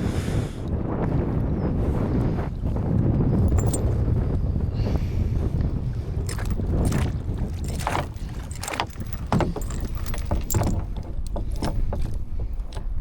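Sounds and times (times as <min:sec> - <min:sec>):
wind on microphone: 0:00.0 - 0:13.0
paddle strokes splashing water: 0:05.5 - 0:12.9.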